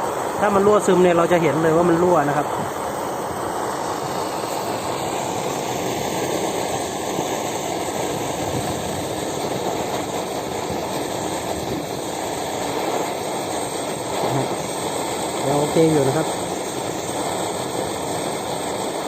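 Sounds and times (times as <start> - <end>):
camping stove burner rushing: 0.0 - 19.0
wind buffeting microphone: 7.1 - 12.8.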